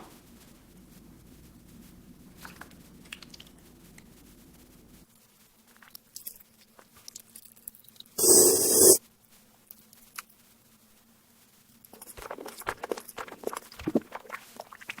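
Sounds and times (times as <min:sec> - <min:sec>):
wet chewing squelches: 0:02.4 - 0:04.1, 0:11.9 - 0:15.0
burst of hiss: 0:08.2 - 0:09.0.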